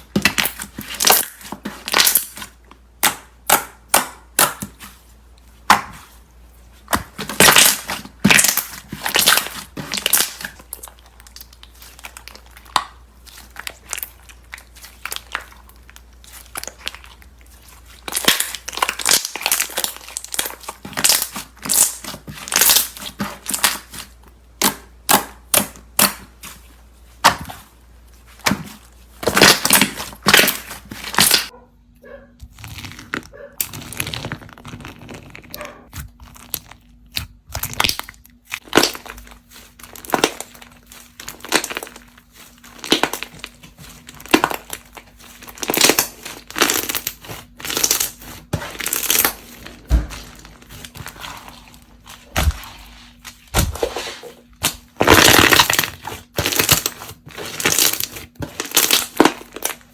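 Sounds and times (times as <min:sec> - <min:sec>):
slime crackling and popping: 0:00.0 - 0:05.0, 0:06.8 - 0:27.7, 0:28.3 - 0:31.5, 0:32.5 - 0:59.9.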